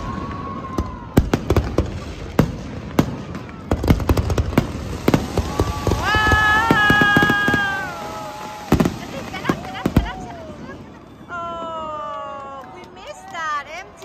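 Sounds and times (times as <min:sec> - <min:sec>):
fireworks bursting and crackling: 0:00.0 - 0:14.0.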